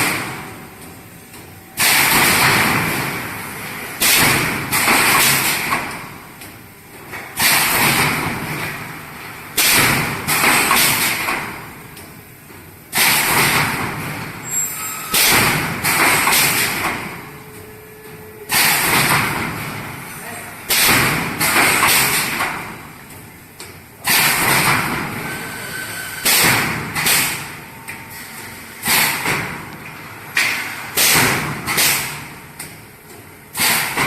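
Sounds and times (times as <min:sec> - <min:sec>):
welding machine clunks: 0:01.3 - 0:03.2, 0:15.1 - 0:17.3, 0:26.2 - 0:27.6, 0:33.5 - 0:34.0.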